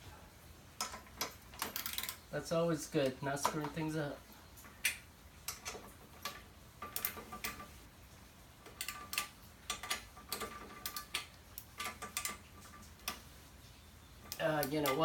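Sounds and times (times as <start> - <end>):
hand tools clicking and clinking: 0.8 - 2.3, 3.0 - 7.8, 8.6 - 13.3, 14.2 - 15.0.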